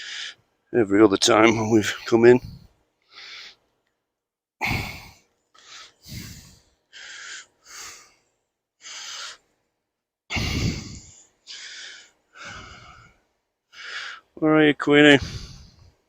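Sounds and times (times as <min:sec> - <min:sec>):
person breathing: 0:00.0 - 0:00.4, 0:02.4 - 0:03.6, 0:04.6 - 0:09.5, 0:10.3 - 0:14.4, 0:15.2 - 0:16.0.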